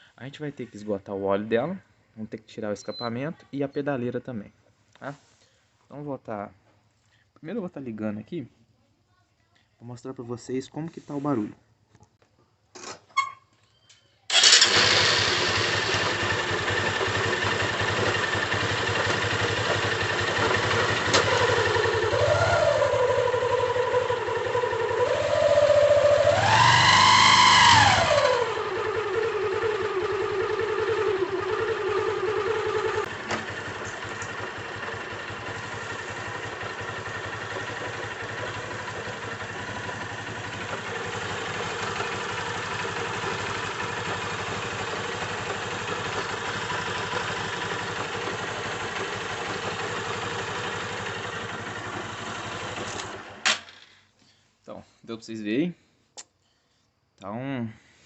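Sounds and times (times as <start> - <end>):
motorcycle engine idling and revving: 14.3 - 53.7.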